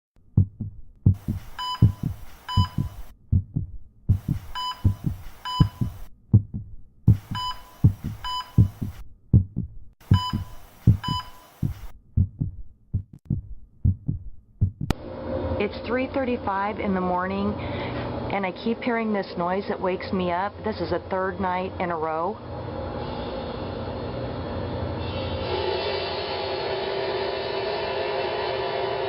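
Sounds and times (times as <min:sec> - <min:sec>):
low dull heartbeat-like thuds: 0:00.2 - 0:15.0
short high beeps: 0:01.6 - 0:03.0, 0:04.5 - 0:06.0, 0:07.3 - 0:08.8, 0:10.1 - 0:11.8.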